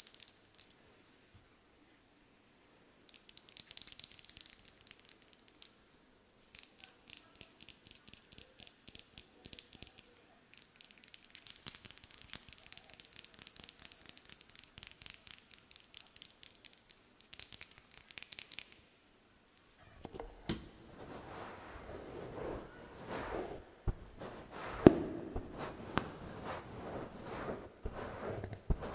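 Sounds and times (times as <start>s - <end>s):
soft rustle: 19.8s - 28.9s
hissing brushing: 20.6s - 28.9s.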